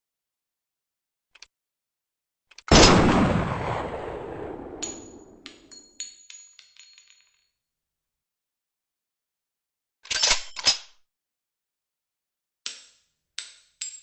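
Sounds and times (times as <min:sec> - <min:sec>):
loud deep boom: 0:02.7 - 0:05.4.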